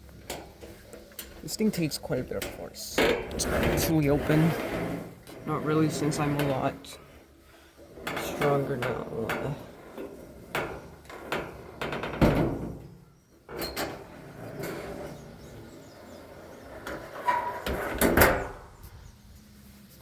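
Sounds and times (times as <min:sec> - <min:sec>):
heavy metal door knocks and clunks: 0:08.1 - 0:13.0.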